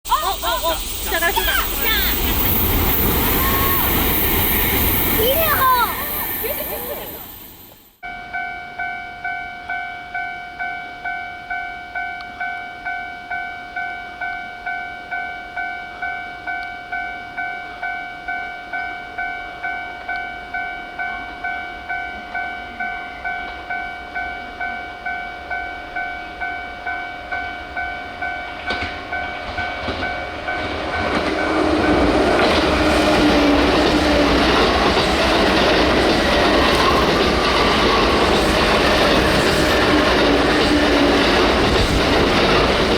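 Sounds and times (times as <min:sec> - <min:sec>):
train passing rumble: 0:00.0 - 0:08.0, 0:19.2 - 0:42.9
level crossing bell clanging: 0:00.0 - 0:42.9.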